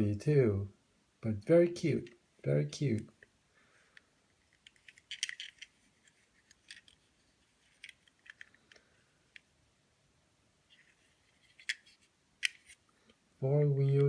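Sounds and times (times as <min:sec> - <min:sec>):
toy train clicking and rattling: 0:04.4 - 0:08.8.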